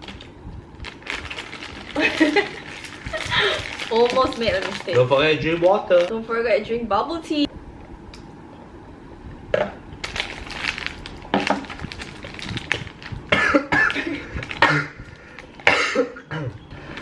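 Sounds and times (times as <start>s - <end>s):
person coughing: 13.3s - 15.0s, 15.6s - 16.6s.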